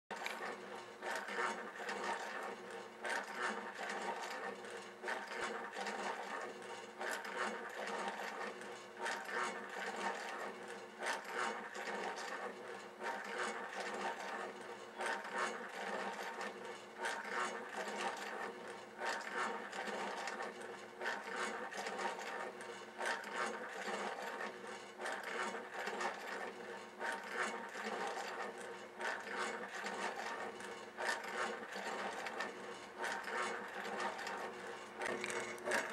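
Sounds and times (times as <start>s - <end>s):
mechanical hum: 0.1s - 35.9s
wooden parts clicking and rubbing: 35.0s - 35.9s.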